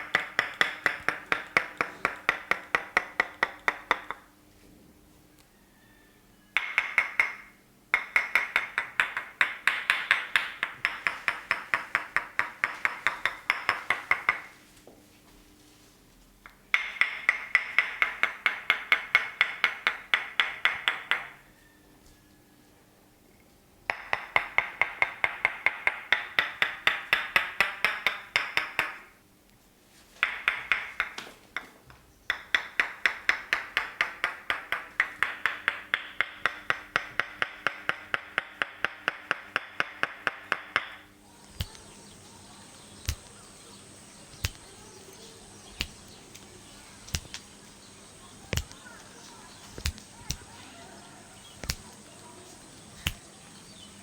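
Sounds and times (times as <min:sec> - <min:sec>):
hands slapping in massage: 0:41.5 - 0:42.0, 0:43.0 - 0:43.4, 0:44.2 - 0:44.8, 0:45.7 - 0:47.5, 0:48.4 - 0:49.0, 0:49.6 - 0:50.6, 0:51.5 - 0:52.1, 0:53.0 - 0:53.3.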